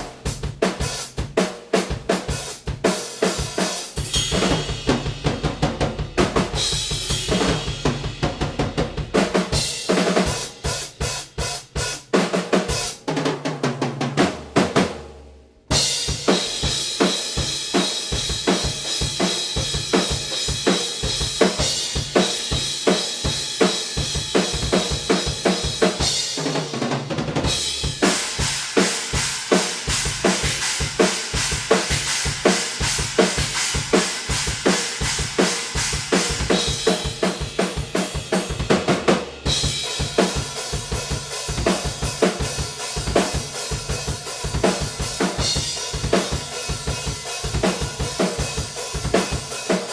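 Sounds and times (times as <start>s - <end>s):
snare drum: 0.0s - 15.1s, 15.7s - 49.9s
cymbals: 3.3s - 5.4s.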